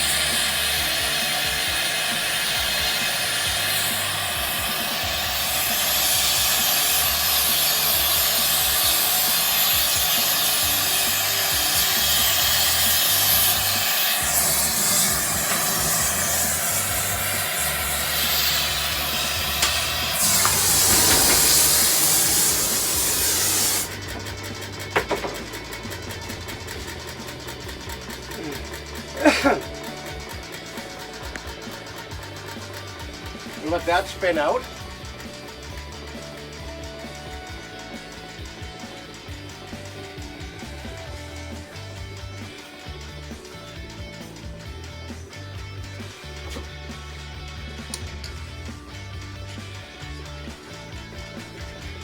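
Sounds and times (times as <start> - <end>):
torch flame hissing: 0.0 - 39.0
spinning casting arm ticking: 0.1 - 45.9.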